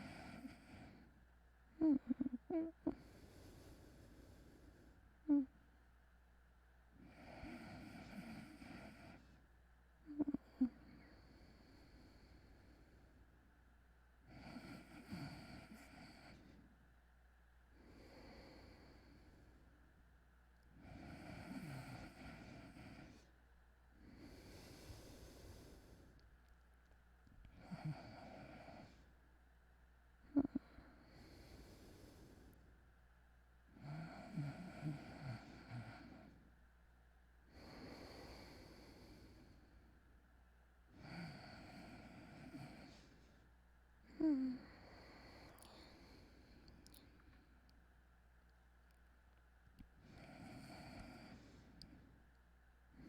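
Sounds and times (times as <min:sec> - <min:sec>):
person snoring: 0:01.8 - 0:03.8, 0:20.8 - 0:23.2, 0:33.8 - 0:36.3, 0:44.1 - 0:46.3
person snoring lightly: 0:01.8 - 0:03.8, 0:30.3 - 0:32.4, 0:33.8 - 0:36.4
soft breath out: 0:01.8 - 0:05.5, 0:20.7 - 0:23.4, 0:24.0 - 0:26.3, 0:30.3 - 0:32.7, 0:37.5 - 0:40.0, 0:40.9 - 0:47.7, 0:50.0 - 0:52.2.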